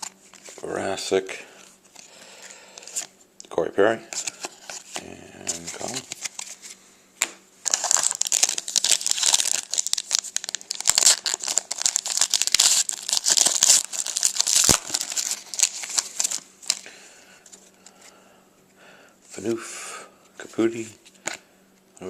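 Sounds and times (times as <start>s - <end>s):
foil wrapper tearing and crinkling: 7.6s - 16.9s.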